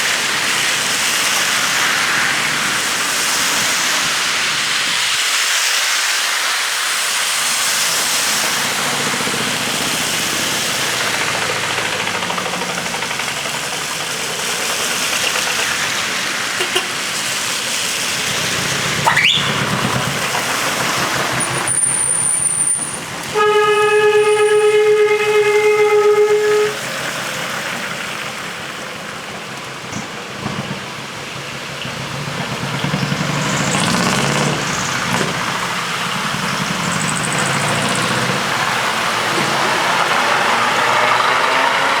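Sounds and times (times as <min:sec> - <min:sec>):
trucks driving past: 0:00.0 - 0:42.0
truck air horn: 0:16.5 - 0:17.3, 0:21.5 - 0:27.3.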